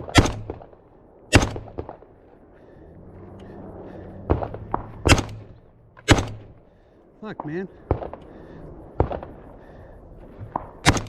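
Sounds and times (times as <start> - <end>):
rifle shots: 0.0 - 2.1, 4.3 - 6.6, 10.5 - 11.0.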